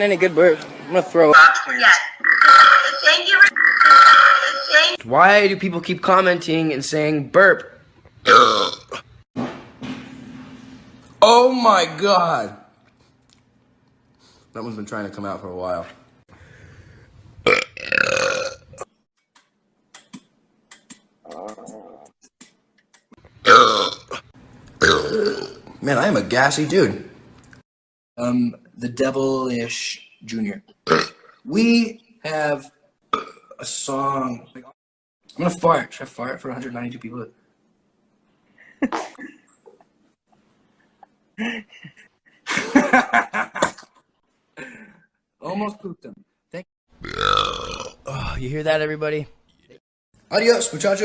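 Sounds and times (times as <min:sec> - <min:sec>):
man burping loudly: 0:08.3 - 0:09.2, 0:17.5 - 0:18.8, 0:23.4 - 0:25.8, 0:30.8 - 0:31.3, 0:33.1 - 0:33.6, 0:47.0 - 0:48.2
man farting: 0:08.3 - 0:09.2, 0:17.4 - 0:18.9, 0:23.4 - 0:25.6, 0:47.0 - 0:48.0.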